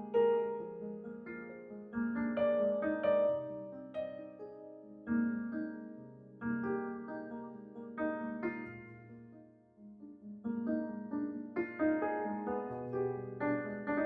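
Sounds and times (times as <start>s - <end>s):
soft piano chords: 0.0s - 14.0s.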